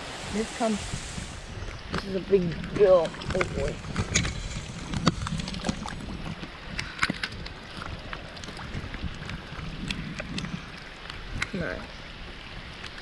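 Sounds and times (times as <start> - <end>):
heavy rain: 0.0 - 7.1
wind rumble on microphone: 0.0 - 13.0
raindrops tapping on camera: 1.6 - 12.0.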